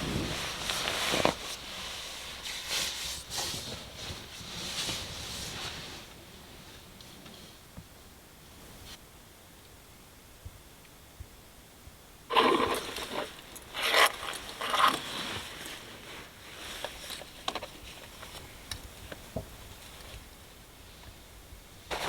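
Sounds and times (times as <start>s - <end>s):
rustling and scraping: 0.0s - 7.6s, 12.3s - 21.2s, 21.8s - 22.0s.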